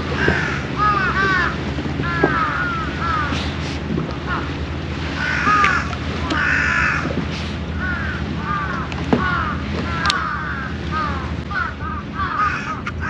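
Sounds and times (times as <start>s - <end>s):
birds calling: 0.0s - 13.0s
steady low hum: 0.0s - 13.0s.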